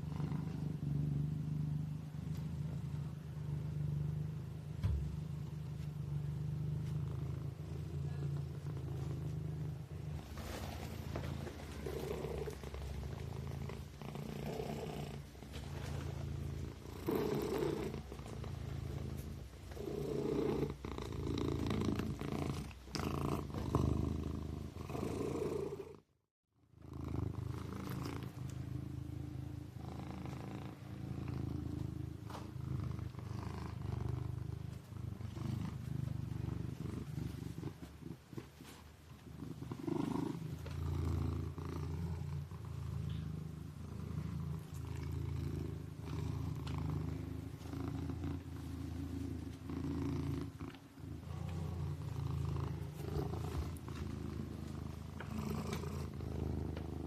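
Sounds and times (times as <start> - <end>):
kitten purring: 0.0 - 57.0.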